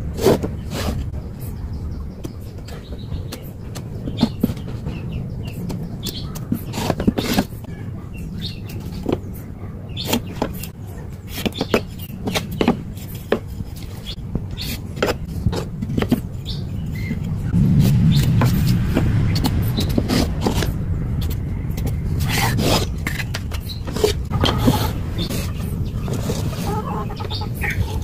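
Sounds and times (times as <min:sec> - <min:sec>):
low hum: 0:15.2 - 0:28.0.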